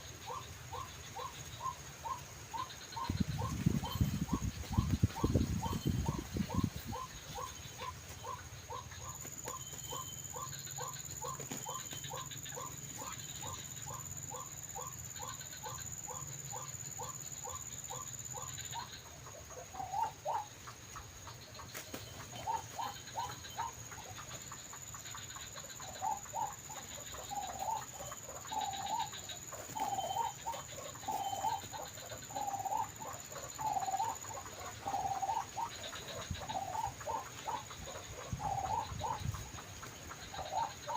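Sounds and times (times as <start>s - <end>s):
waterhen loud irregular calls: 25.8s - 40.9s.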